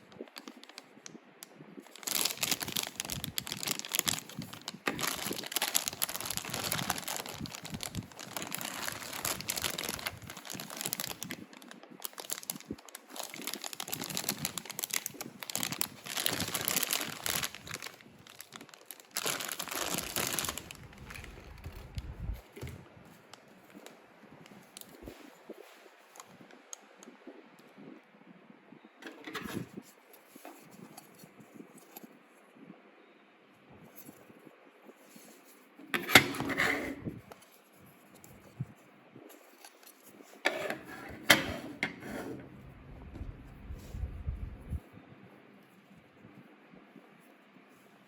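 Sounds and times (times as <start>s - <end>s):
packaging crinkling and tearing: 1.8s - 22.7s.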